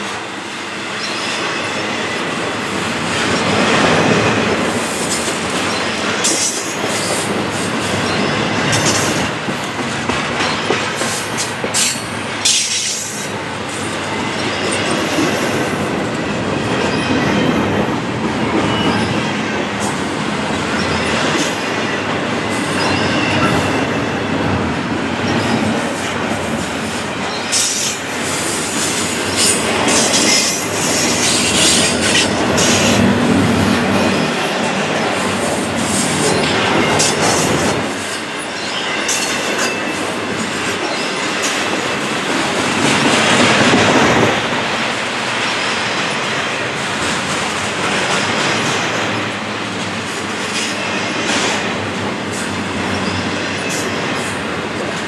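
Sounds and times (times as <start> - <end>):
freight train rumbling past: 0.0 - 55.0
high wheel squeal: 27.3 - 40.0.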